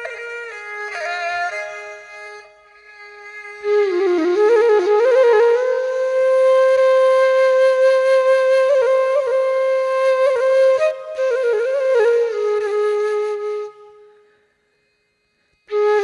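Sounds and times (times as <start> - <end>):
solo flute playing: 2.3 - 14.3, 15.7 - 16.0.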